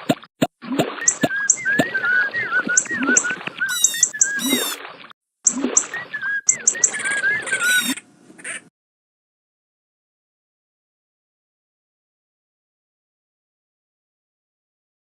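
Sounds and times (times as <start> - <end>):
birds chirping: 1.0 - 4.8, 5.5 - 8.1.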